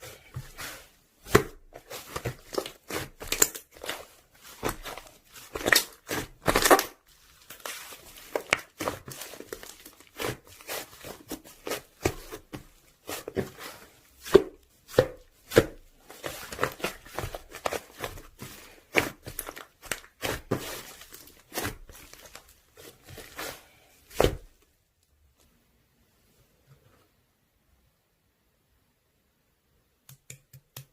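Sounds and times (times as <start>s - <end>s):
slime squelching and popping: 0.6s - 22.4s.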